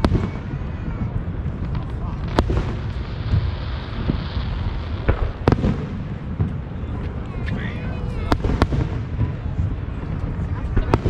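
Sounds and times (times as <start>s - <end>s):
firework sharp bang: 0.0s - 7.2s, 8.2s - 11.0s
distant fireworks rumble: 0.0s - 11.0s.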